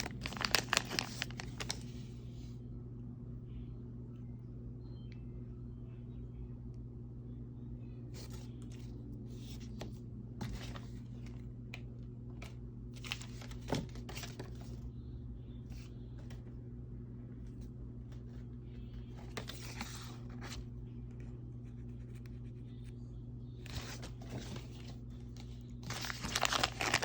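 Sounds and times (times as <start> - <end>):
packaging crinkling and rustling: 0.0 - 2.0, 13.0 - 14.7, 23.7 - 27.0
low hum: 0.0 - 27.0.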